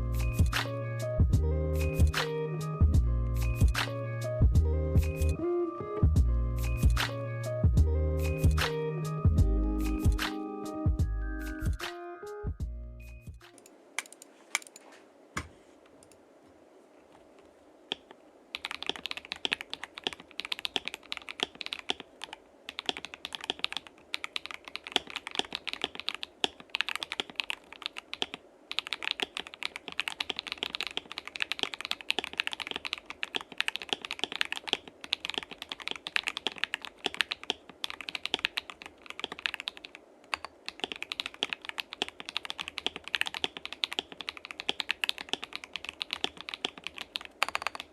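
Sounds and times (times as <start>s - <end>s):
fast typing on mechanical keyboard: 17.9s - 47.9s.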